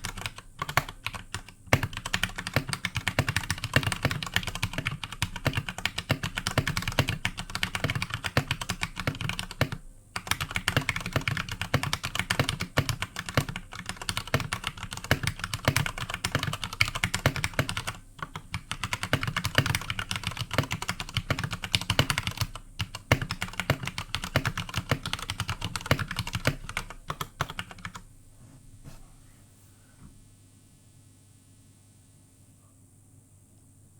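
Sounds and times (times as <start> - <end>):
fast typing on mechanical keyboard: 0.0 - 28.0.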